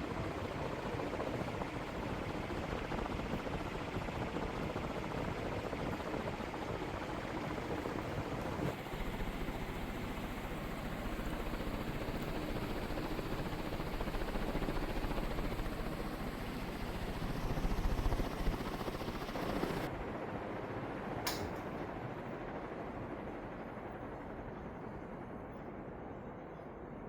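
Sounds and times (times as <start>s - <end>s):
sharp click: 21.3s - 21.7s.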